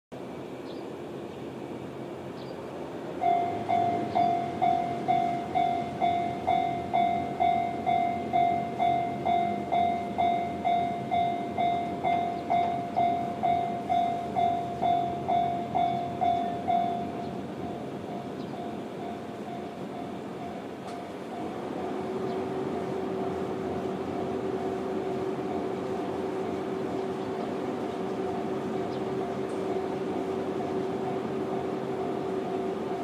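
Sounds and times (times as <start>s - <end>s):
level-crossing electronic bell: 3.2s - 20.6s
faint steady tone: 3.2s - 33.0s.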